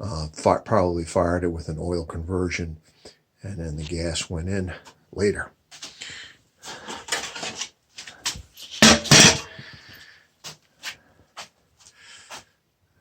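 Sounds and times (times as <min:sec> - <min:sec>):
hard objects rubbing and clattering: 0:08.6 - 0:09.6.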